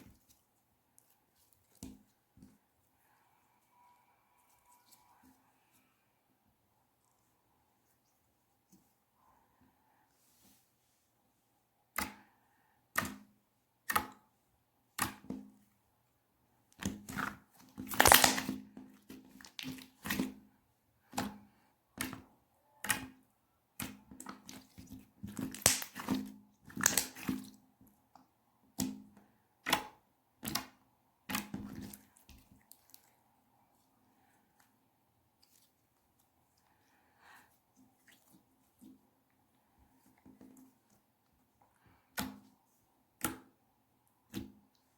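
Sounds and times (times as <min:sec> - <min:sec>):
slime squelching by hand: 0:00.0 - 0:06.1, 0:16.7 - 0:28.9, 0:29.5 - 0:44.9.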